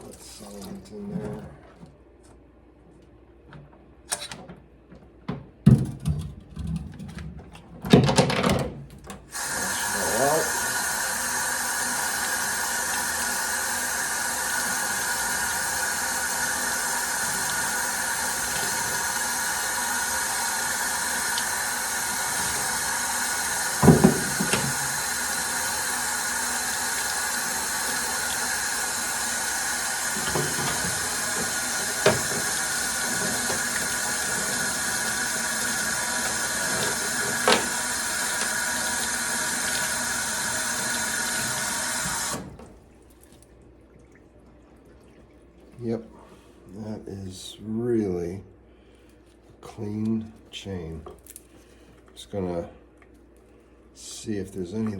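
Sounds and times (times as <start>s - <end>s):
solvent stream running: 9.2s - 47.6s.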